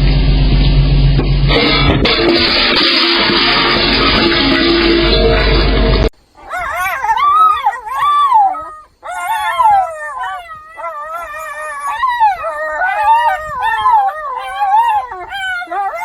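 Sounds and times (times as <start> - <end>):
dog howling: 6.4 - 16.0.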